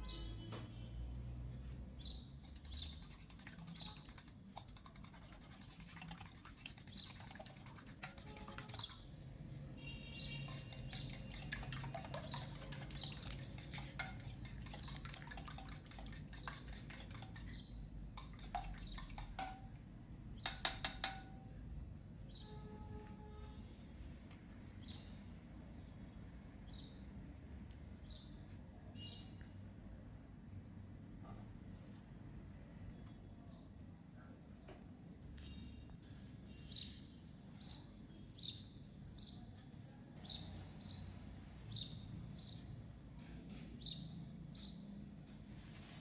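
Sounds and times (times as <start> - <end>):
small birds chirping: 2.0 - 6.2, 6.8 - 7.7, 8.5 - 9.1, 9.8 - 15.7, 16.4 - 17.9, 18.6 - 19.4.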